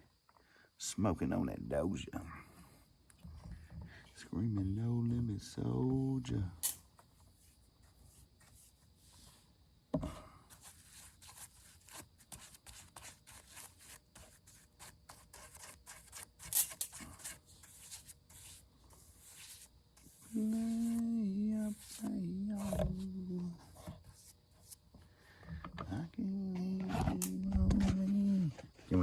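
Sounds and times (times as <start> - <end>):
hands rubbing wood: 7.2 - 9.4, 10.5 - 24.9
low wavering voice: 20.3 - 23.7, 25.8 - 29.0.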